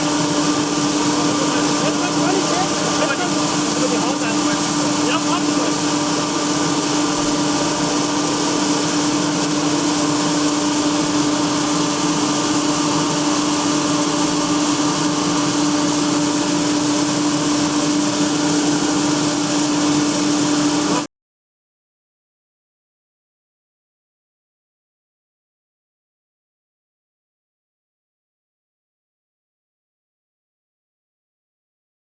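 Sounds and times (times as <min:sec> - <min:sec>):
farm machine engine humming: 0:00.0 - 0:21.1.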